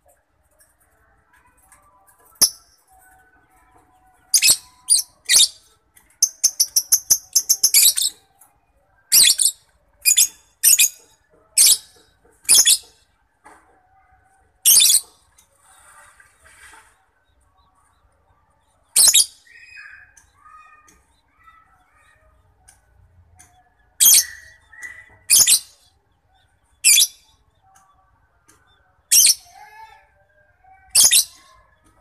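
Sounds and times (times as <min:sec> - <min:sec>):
lovebird chirping: 0:06.2 - 0:08.2.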